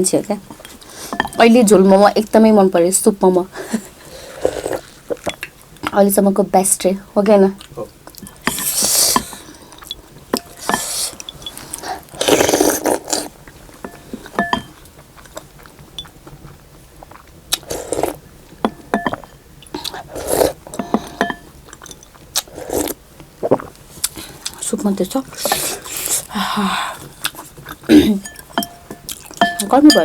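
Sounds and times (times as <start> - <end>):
spoon scraping a bowl: 1.0 - 1.5, 8.2 - 9.4, 10.4 - 11.8, 20.2 - 22.1, 28.2 - 30.0
close-miked chewing: 7.5 - 18.6, 19.6 - 30.0.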